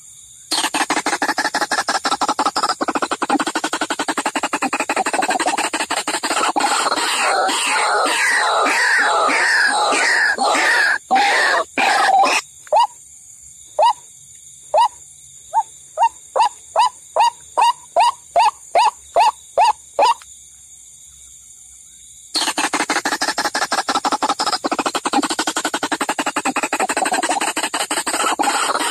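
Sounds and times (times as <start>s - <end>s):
harsh bird calls: 0.5s - 13.0s, 22.4s - 28.9s.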